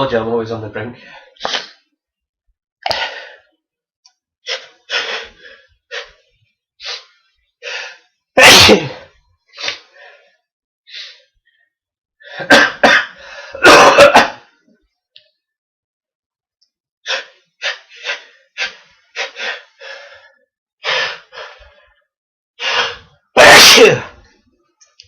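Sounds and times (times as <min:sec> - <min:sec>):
man sneezing loudly: 0:08.4 - 0:09.1, 0:12.4 - 0:14.5, 0:23.4 - 0:24.2.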